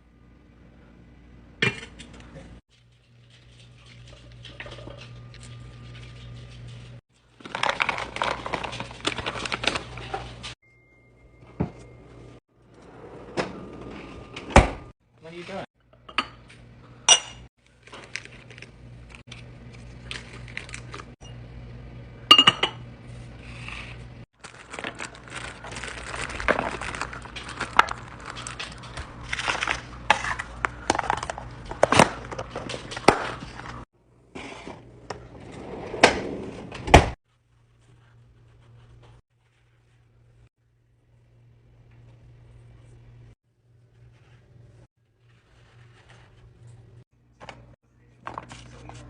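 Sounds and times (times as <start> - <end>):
packaging rustling: 7.2 - 10.5, 24.4 - 32.8.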